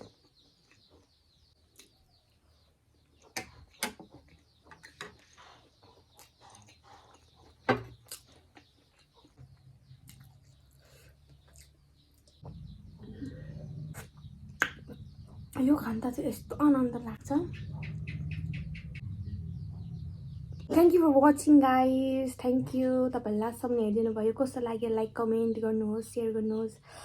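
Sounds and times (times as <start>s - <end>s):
birds chirping faintly: 0.0s - 27.0s
chewing and mouth noises: 3.1s - 12.4s
low hum: 12.4s - 24.9s.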